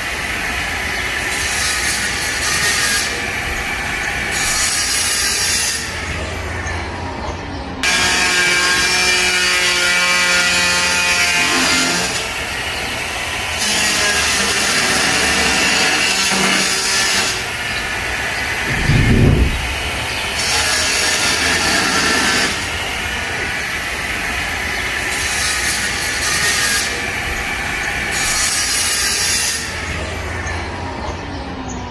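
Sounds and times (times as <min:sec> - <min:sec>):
masonry saw blade whining: 0:07.8 - 0:30.4
low thud: 0:18.7 - 0:20.0.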